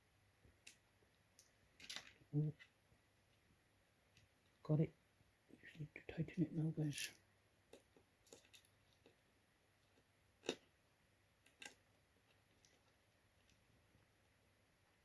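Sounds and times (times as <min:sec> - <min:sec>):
small metal parts clicking: 0:01.8 - 0:02.2, 0:06.9 - 0:07.2, 0:08.2 - 0:08.7.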